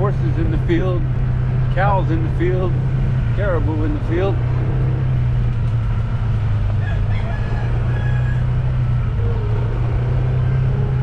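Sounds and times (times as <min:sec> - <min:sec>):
vehicle engine droning: 0:00.0 - 0:11.0
rooster crowing: 0:06.8 - 0:11.0.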